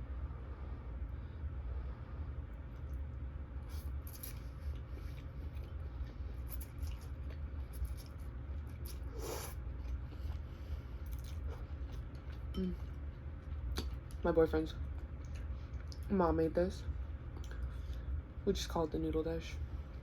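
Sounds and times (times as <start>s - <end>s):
chewing and mouth sounds: 2.6s - 16.1s, 17.2s - 18.2s.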